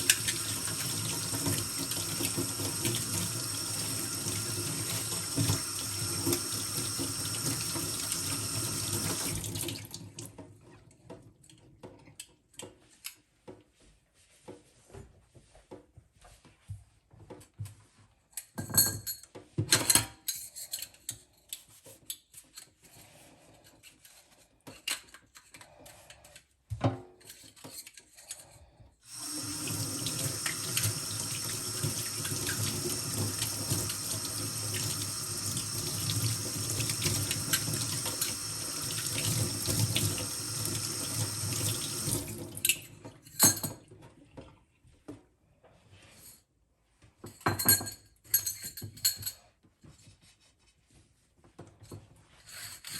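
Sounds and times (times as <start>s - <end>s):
tap water running into sink: 0.0s - 10.4s, 29.1s - 43.0s.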